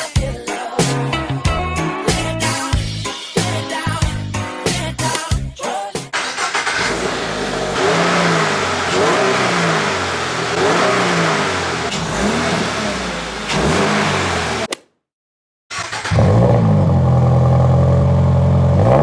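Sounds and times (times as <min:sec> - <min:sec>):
car engine throttle blips: 0:06.2 - 0:14.8, 0:15.7 - 0:17.8.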